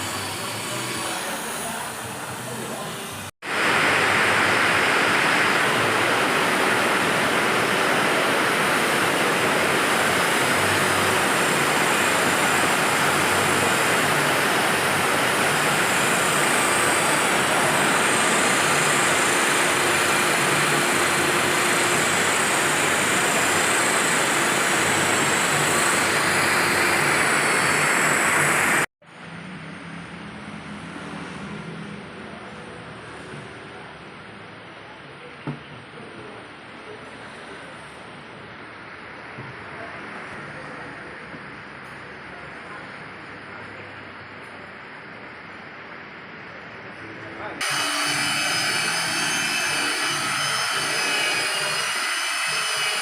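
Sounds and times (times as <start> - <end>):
loud hissing tool: 0.0 - 28.9, 47.6 - 53.0.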